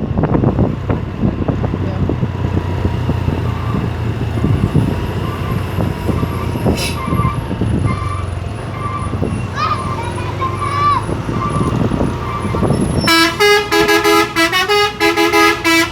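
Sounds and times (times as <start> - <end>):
truck diesel engine running: 0.0 - 15.9.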